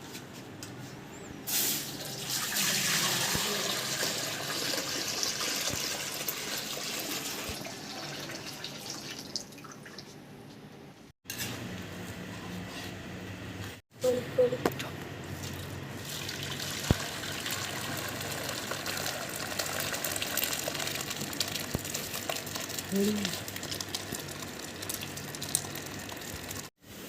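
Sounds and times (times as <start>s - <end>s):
water pouring: 1.5s - 10.1s, 15.4s - 26.7s.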